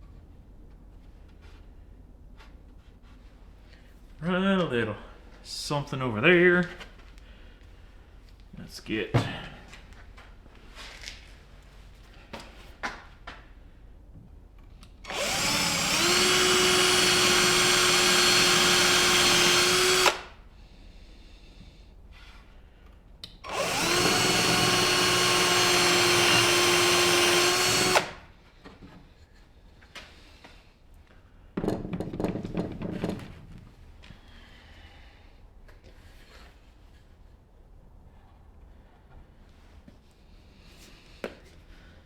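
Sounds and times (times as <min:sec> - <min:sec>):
electric drill spinning: 0:15.1 - 0:20.3, 0:23.5 - 0:28.2.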